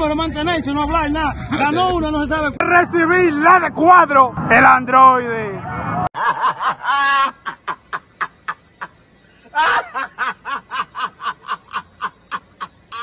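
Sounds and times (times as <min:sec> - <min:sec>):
person laughing: 0:06.2 - 0:13.0.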